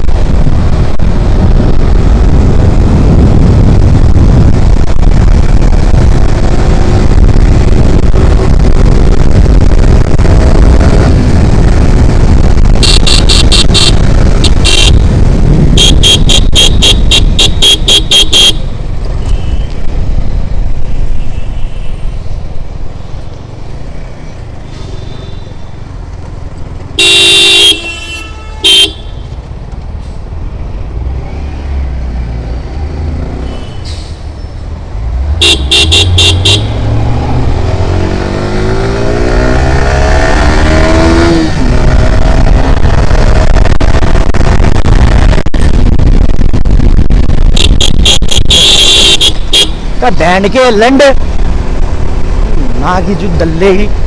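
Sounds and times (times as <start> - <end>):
wind rumble: 0.0 - 54.0
motorcycle engine running: 0.1 - 20.8
vehicle horns tooting: 12.8 - 15.1, 15.7 - 19.7, 27.0 - 29.3, 35.4 - 36.9, 47.6 - 49.8
engine revving up: 35.0 - 43.6.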